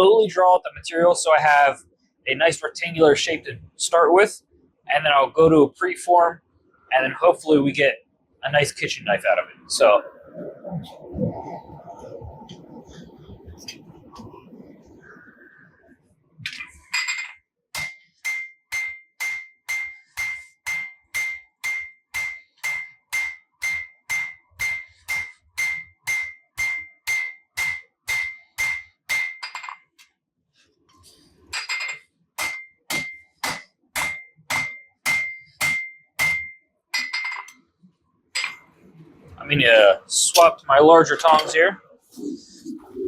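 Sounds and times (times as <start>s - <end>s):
hammer striking steel on anvil: 17.8s - 29.7s, 31.6s - 37.5s.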